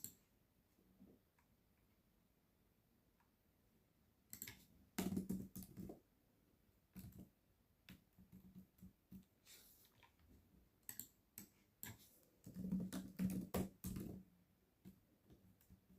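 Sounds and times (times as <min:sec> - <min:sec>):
keyboard typing: 0:04.3 - 0:06.0, 0:10.8 - 0:14.2.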